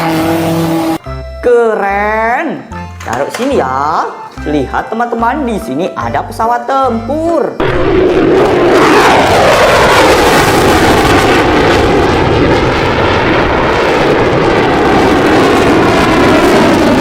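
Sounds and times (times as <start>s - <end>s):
fighter jet engine: 0.0s - 1.0s, 7.6s - 17.0s.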